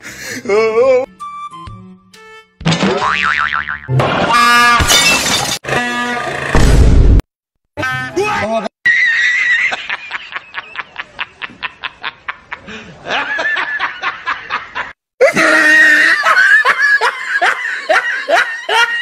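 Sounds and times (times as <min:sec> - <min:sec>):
people laughing: 0:08.9 - 0:19.0.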